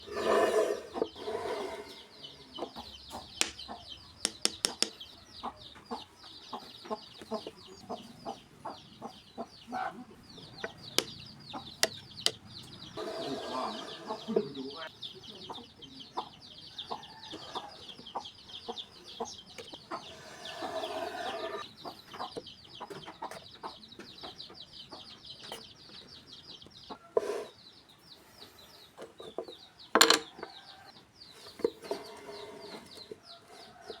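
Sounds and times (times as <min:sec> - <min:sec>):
chicks peeping: 0:01.8 - 0:34.0
knocks and taps: 0:03.4 - 0:05.0, 0:11.0 - 0:11.2, 0:11.8 - 0:12.4.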